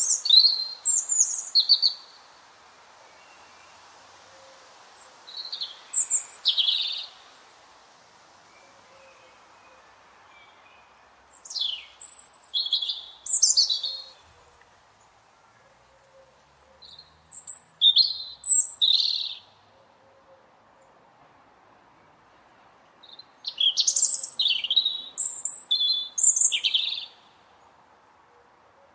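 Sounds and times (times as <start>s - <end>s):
robin singing: 0.0s - 2.4s, 5.2s - 7.4s, 9.1s - 15.1s, 16.1s - 19.7s, 23.0s - 27.6s.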